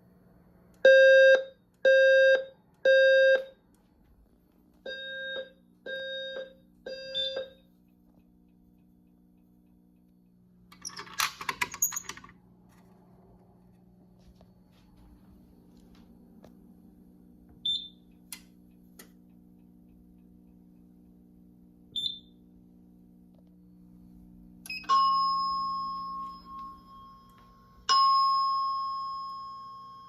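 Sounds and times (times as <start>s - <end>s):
bell-like alarm chime: 24.8s - 30.0s.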